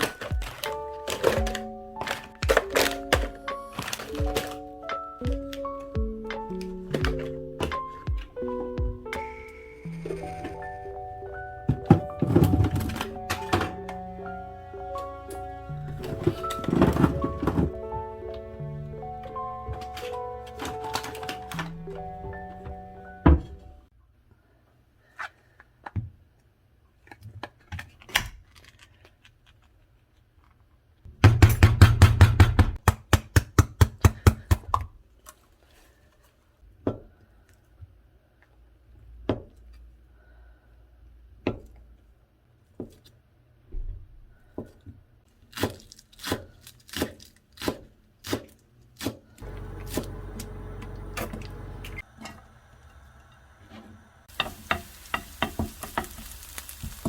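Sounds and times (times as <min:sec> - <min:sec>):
utensils and dishes clattering: 0:15.9 - 0:17.8
low hum: 0:49.4 - 0:54.2.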